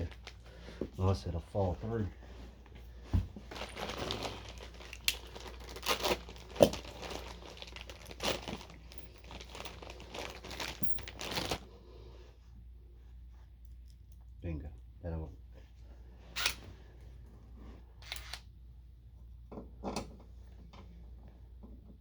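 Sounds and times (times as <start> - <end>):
plastic packaging crinkling: 0.0 - 0.5, 3.4 - 11.6.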